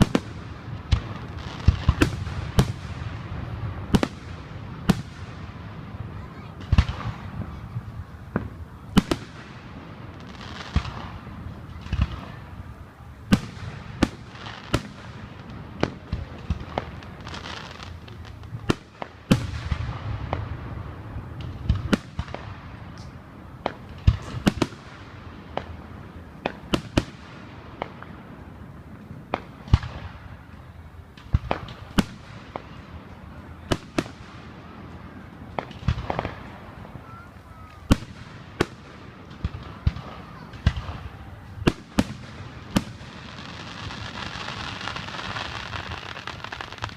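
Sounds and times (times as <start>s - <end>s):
fireworks bangs: 0.0s - 46.9s
fireworks hiss: 31.2s - 46.9s.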